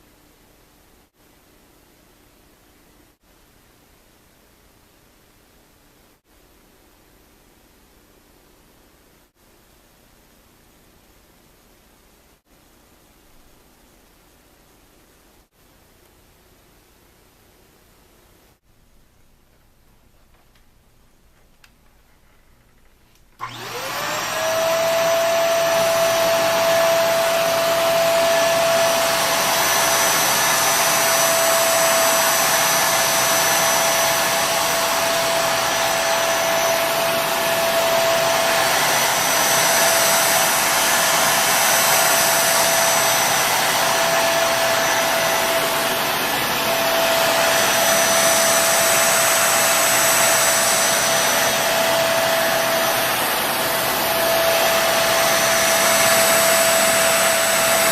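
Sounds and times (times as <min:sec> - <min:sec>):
vacuum cleaner running: 0:23.4 - 0:57.9.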